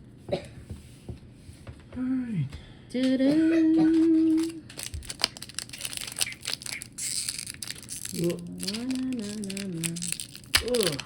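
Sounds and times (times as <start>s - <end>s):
person humming a tune: 3.0s - 4.6s, 8.2s - 10.2s
foil wrapper crinkling and tearing: 3.9s - 11.0s.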